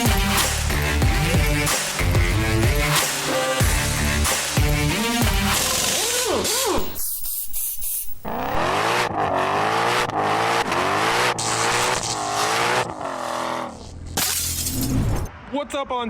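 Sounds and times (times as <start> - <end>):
car engine accelerating hard: 8.3 - 13.9.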